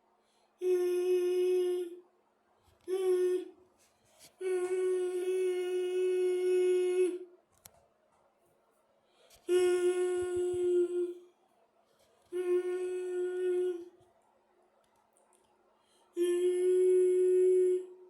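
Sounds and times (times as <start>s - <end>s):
person humming train horn imitation: 0.6s - 2.0s, 16.2s - 18.0s.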